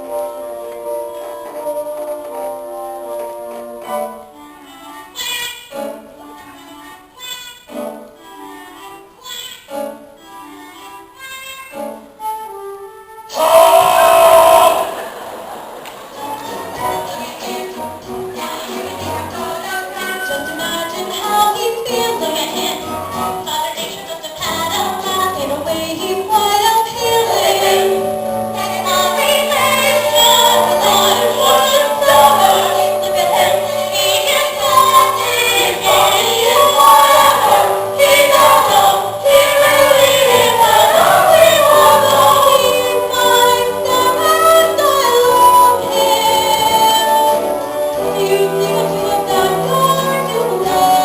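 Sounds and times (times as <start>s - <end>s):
instrumental accompaniment: 0.0s - 51.0s
ensemble singing together: 13.3s - 51.0s.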